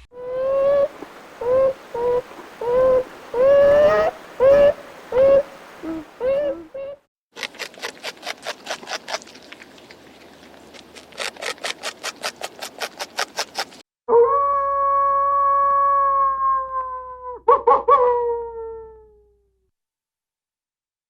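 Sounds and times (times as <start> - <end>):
wolf howling: 14.1 - 19.2.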